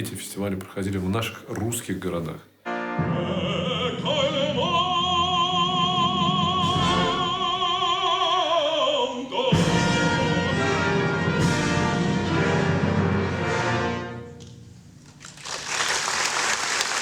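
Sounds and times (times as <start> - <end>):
symphony orchestra playing: 2.6 - 7.8, 9.5 - 14.8
operatic voice singing high note: 3.1 - 10.7.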